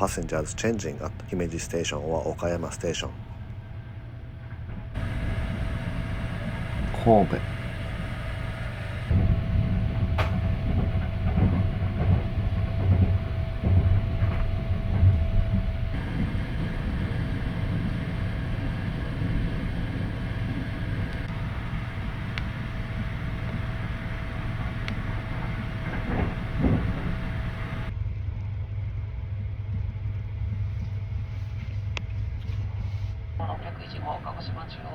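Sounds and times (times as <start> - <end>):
train running rumble: 0.0 - 27.9, 32.7 - 34.9
faint train whine: 0.0 - 28.0, 29.9 - 34.9
wheels clacking over rails: 4.6 - 27.9, 33.4 - 34.9.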